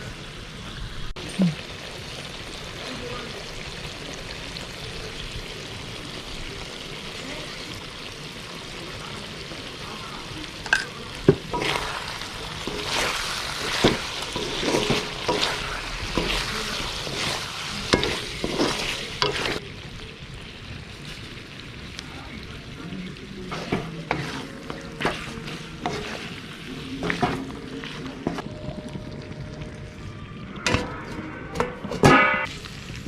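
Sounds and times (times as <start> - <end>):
chicken sizzling in oil: 0.0 - 30.5, 32.4 - 33.0
spatula scraping pan: 11.4 - 19.6, 23.5 - 28.4.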